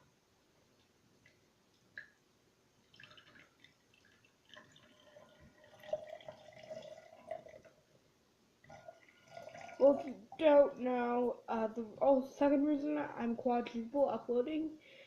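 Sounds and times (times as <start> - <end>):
juice pouring into glass: 2.9 - 7.8, 8.7 - 10.1.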